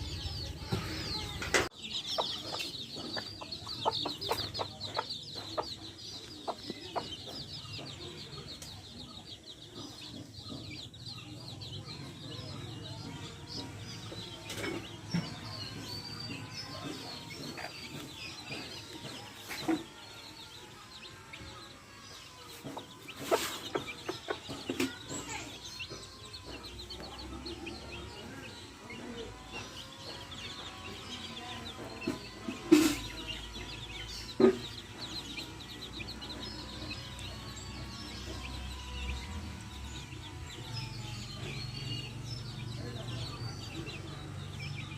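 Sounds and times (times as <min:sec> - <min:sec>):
hens clucking: 0:00.0 - 0:08.9, 0:22.2 - 0:40.2
chicks peeping: 0:00.0 - 0:44.9.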